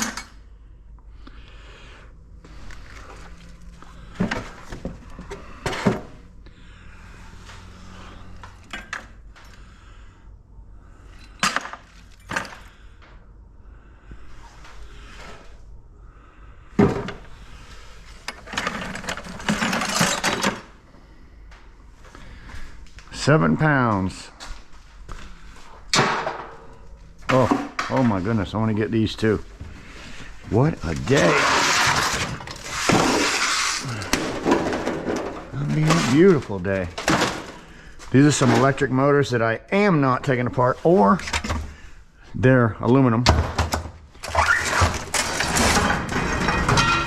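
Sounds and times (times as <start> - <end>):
scrap metal clinks and knocks: 45.2 - 47.0.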